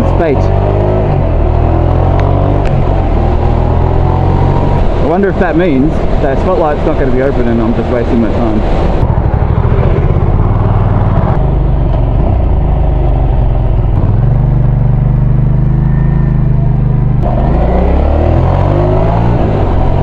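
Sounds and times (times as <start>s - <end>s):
motorcycle engine: 0.0s - 20.0s
wind noise: 0.8s - 12.6s.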